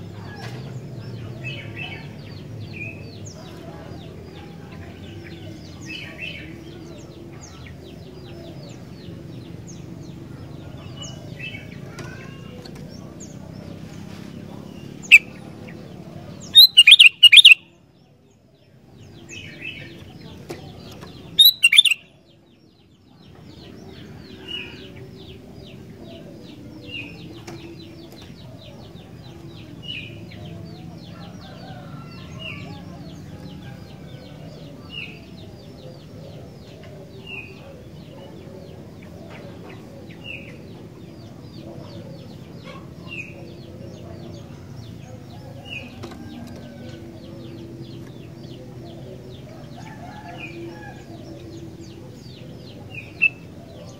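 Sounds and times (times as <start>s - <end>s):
bird chirping calls: 14.5s - 18.0s, 19.0s - 53.9s.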